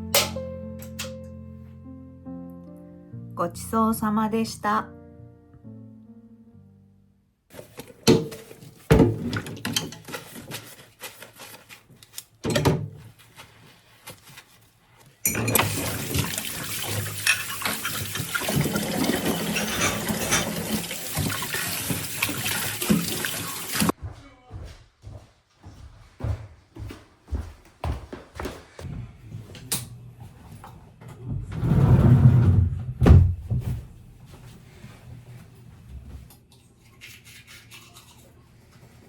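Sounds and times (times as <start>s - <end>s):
dishes and utensils clinking: 7.6s - 10.6s, 15.2s - 16.2s, 17.0s - 22.0s
tap water running over dishes: 15.3s - 24.0s.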